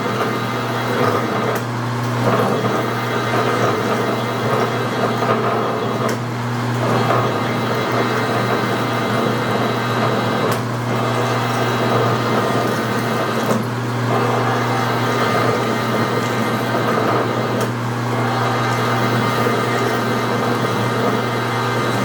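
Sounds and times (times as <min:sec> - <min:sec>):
lathe motor hum: 0:00.0 - 0:22.0
drill cutting steel: 0:06.8 - 0:22.0.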